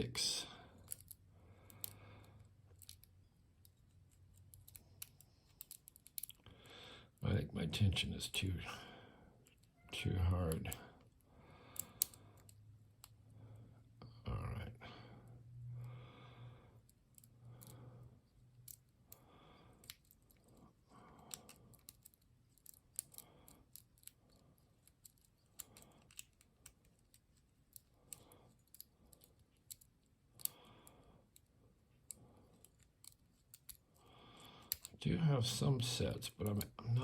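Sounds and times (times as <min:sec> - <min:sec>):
lock pick clicking: 0:11.7 - 0:13.2, 0:21.3 - 0:24.2, 0:34.6 - 0:35.0.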